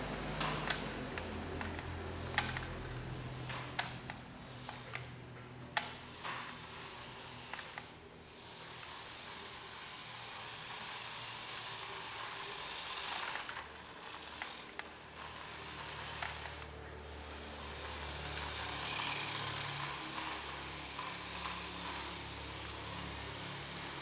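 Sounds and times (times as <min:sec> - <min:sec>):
sharp clicks and knocks: 0:00.3 - 0:06.7.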